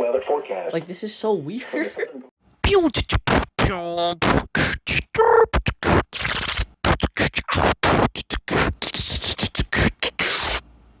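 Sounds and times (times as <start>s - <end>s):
stuttering glitching audio: 2.6s - 10.6s.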